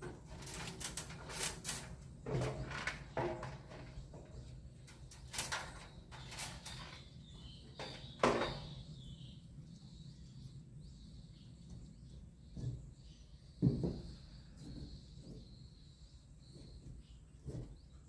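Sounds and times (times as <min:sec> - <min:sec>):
timber knocks and scrapes: 0:00.0 - 0:04.4.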